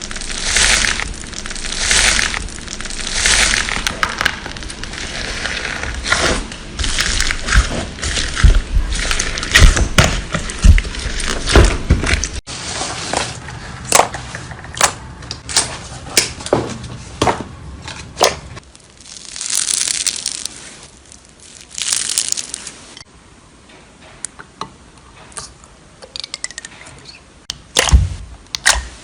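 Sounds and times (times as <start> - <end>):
slime popping and crackling: 0.0 - 12.4, 18.6 - 23.0
slime squishing: 0.0 - 12.4, 18.6 - 23.0.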